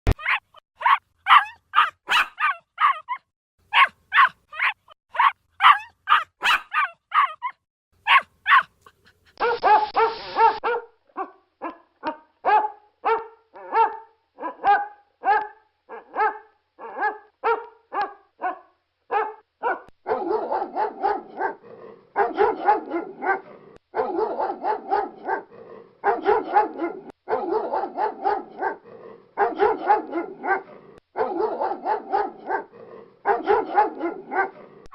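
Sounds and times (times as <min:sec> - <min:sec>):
small dog yapping: 0:00.1 - 0:08.7
overlapping dogs barking: 0:00.3 - 0:03.0, 0:03.8 - 0:07.5, 0:08.1 - 0:08.7, 0:09.3 - 0:34.9
deep dog bark: 0:09.4 - 0:34.8
hiss burst: 0:09.6 - 0:10.6.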